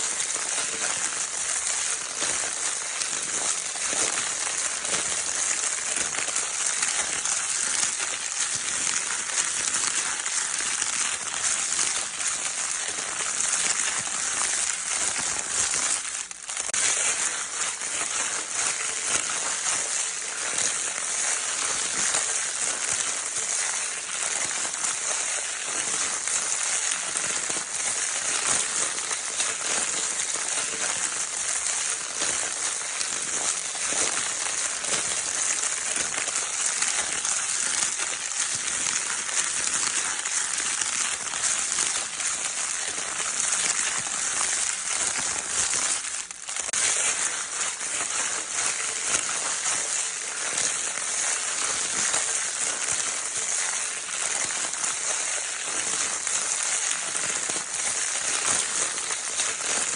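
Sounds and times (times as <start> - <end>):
crinkle paper being scrunched: 0.0 - 59.9.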